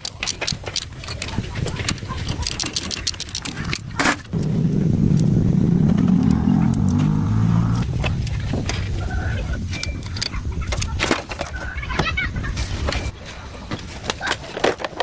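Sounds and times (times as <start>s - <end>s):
engine humming: 3.8s - 11.0s.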